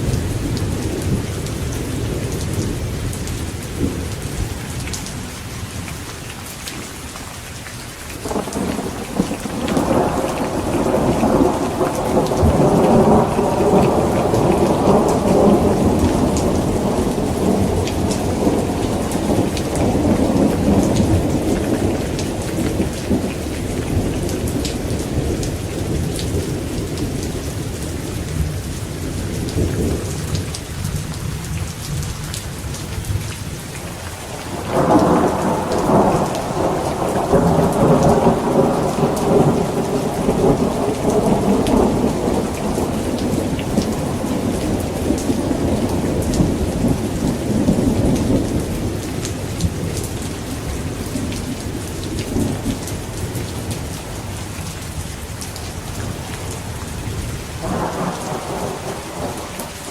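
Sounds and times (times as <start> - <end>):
steady rain: 0.0 - 59.9
rolling thunder: 8.2 - 32.1, 34.3 - 54.0, 56.0 - 59.9
thunderclap: 34.5 - 49.0, 57.6 - 59.9.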